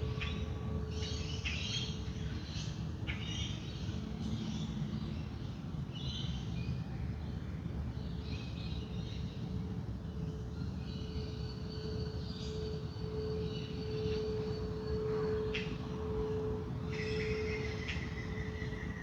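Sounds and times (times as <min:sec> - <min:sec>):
singing bowl tone humming: 0:00.0 - 0:02.9, 0:08.8 - 0:19.0.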